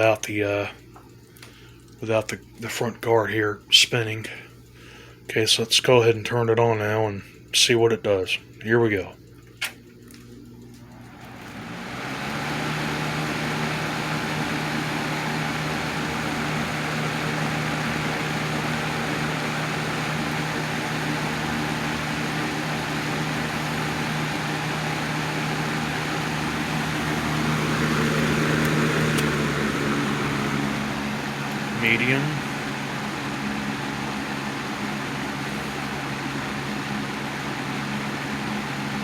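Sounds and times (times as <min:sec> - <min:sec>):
electric fan motor hum: 0:00.0 - 0:39.0.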